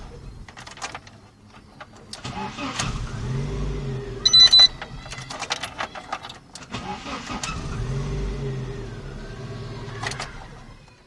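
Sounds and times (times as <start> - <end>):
car engine running: 0.0 - 5.1, 6.2 - 11.0
starter clicking and cranking: 4.3 - 7.8, 9.7 - 11.0.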